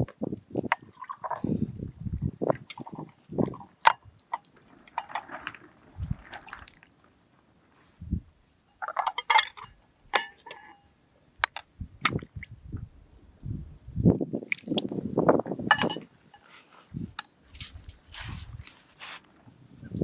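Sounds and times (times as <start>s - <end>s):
dishes and utensils clinking: 8.9s - 10.8s, 15.7s - 16.4s, 17.6s - 18.6s.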